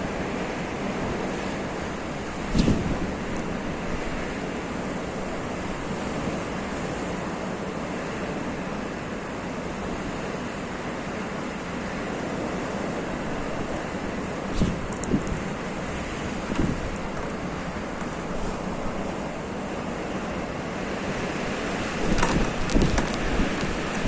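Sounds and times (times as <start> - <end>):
snowstorm wind blowing: 0.0 - 24.0
wind buffeting microphone: 0.9 - 6.6, 12.9 - 19.4, 21.2 - 24.0.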